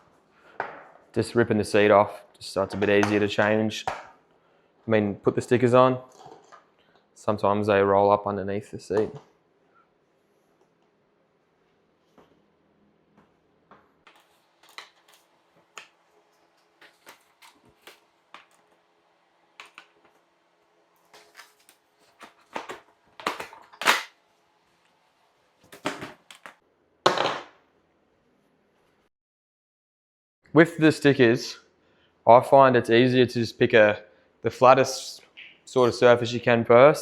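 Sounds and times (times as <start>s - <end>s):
plastic parts handled: 14.1s - 18.8s, 21.0s - 24.1s.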